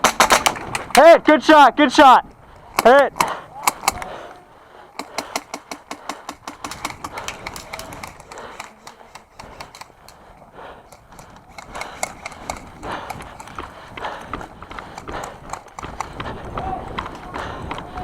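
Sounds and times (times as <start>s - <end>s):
gear rattling: 0.0s - 1.0s, 5.0s - 16.4s
running footsteps on ground: 2.2s - 18.0s.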